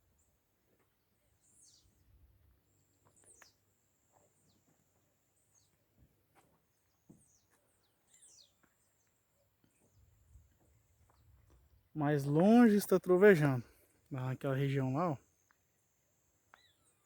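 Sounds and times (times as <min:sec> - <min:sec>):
birds chirping: 0:01.3 - 0:02.1, 0:06.7 - 0:15.6.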